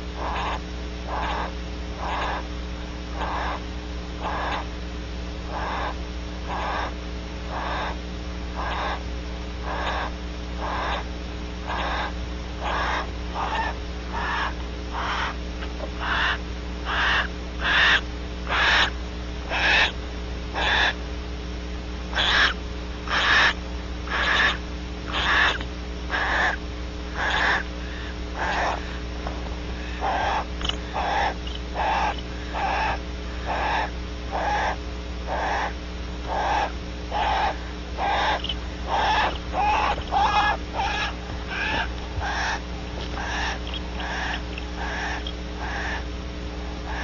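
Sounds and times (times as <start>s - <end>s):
bird hissing breaths: 27.7s - 29.1s.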